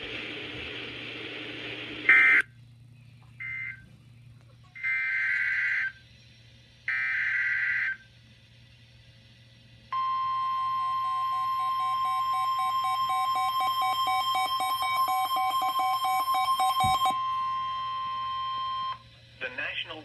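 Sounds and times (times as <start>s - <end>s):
radio hiss: 0.0s - 2.4s, 19.2s - 20.0s.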